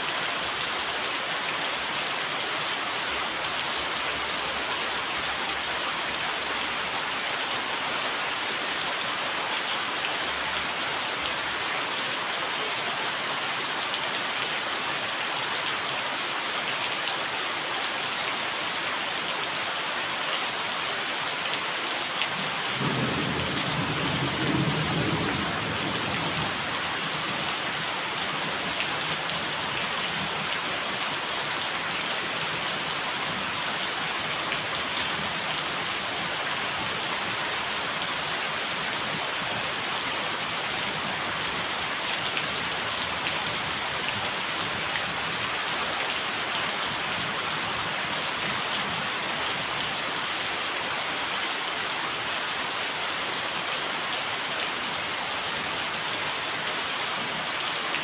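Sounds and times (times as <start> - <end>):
steady rain falling: 0.0 - 58.0
thunder rumbling: 22.8 - 26.6.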